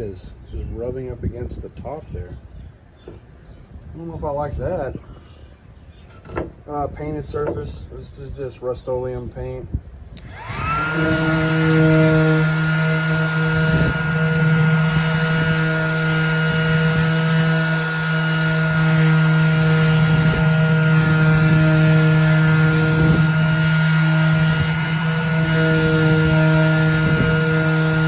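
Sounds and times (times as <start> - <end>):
orbital sander running: 10.2 - 28.0
sander pad rubbing: 10.2 - 28.0.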